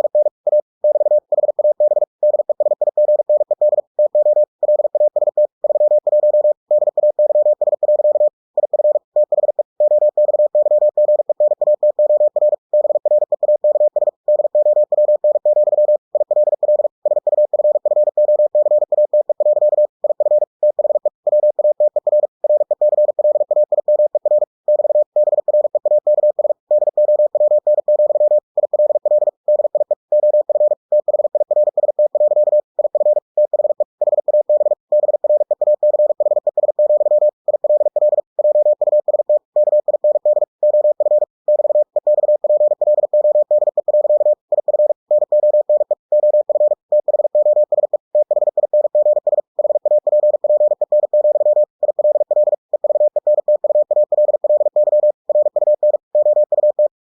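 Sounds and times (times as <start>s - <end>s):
morse code beeps: 0.0s - 56.9s.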